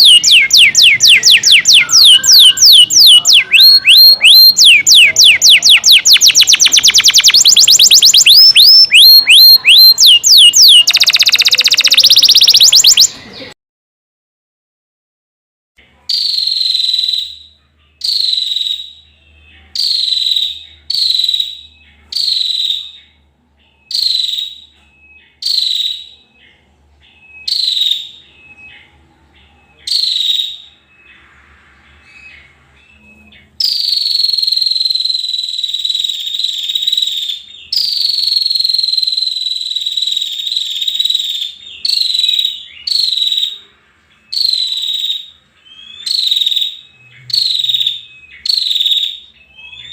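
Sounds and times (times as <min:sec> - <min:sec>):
long high whistling call: 0:00.0 - 0:13.1
high-pitched bird calls: 0:00.0 - 0:13.6, 0:15.8 - 0:49.9.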